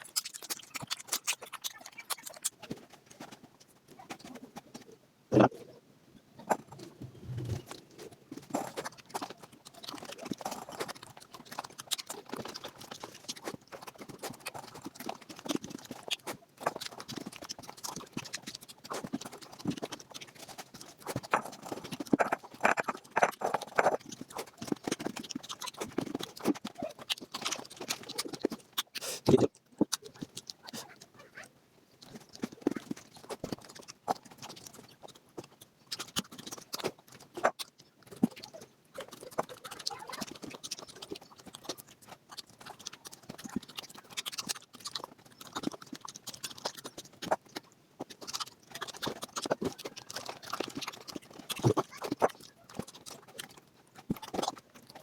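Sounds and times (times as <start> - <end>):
sped up chewing: 0.0 - 5.8, 6.4 - 55.0
wet mouth smacking: 5.3 - 5.6, 21.0 - 31.0, 32.1 - 54.6.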